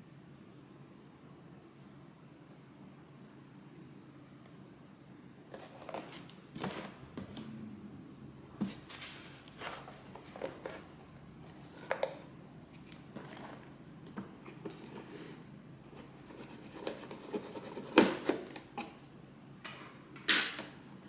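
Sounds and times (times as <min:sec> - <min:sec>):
packaging rustling and scraping: 0:05.5 - 0:07.4, 0:08.6 - 0:19.0.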